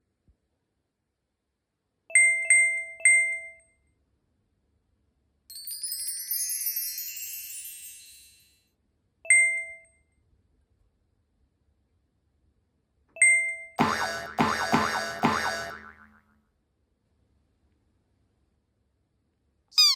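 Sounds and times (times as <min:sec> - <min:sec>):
bell-like dings: 0:05.5 - 0:08.6
shimmering chime cascade: 0:05.5 - 0:08.6.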